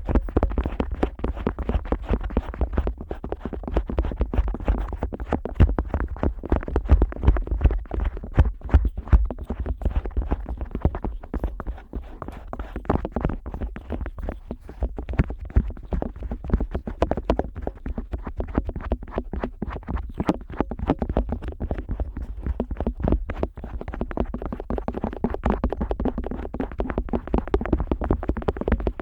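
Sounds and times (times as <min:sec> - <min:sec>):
otoscope tip rubbing on rubber: 0:07.7 - 0:16.2.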